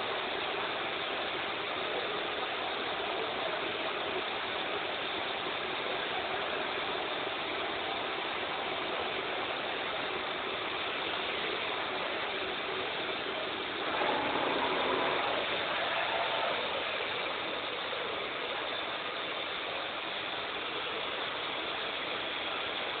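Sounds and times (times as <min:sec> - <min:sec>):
lathe machine running: 0:09.7 - 0:19.6.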